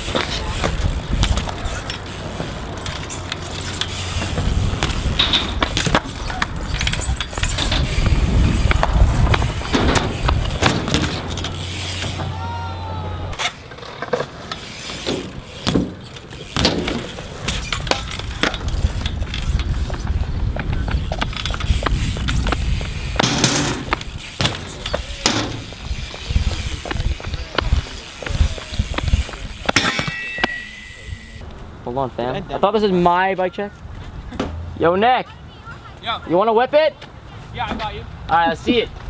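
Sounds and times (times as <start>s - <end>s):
wind rumble on microphone: 0.0s - 1.8s, 4.1s - 11.4s, 17.6s - 29.8s
bike tyres rolling on pavement: 0.0s - 32.8s.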